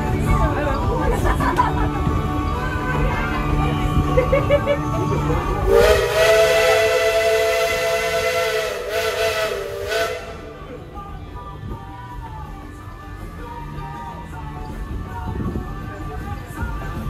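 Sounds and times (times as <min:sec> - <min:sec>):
steam locomotive whistle: 0:05.6 - 0:10.7
steam hissing: 0:05.7 - 0:10.6.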